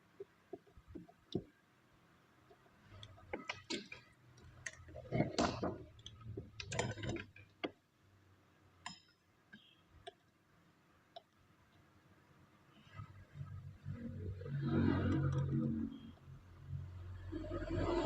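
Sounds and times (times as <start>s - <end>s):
hard objects clicking and clattering: 2.9s - 7.8s.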